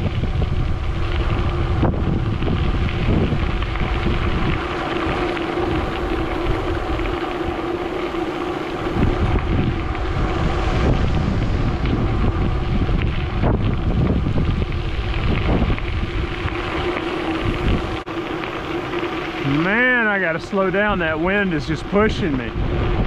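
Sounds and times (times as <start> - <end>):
steady hum: 0.0 - 23.0
wind buffeting microphone: 0.0 - 23.0.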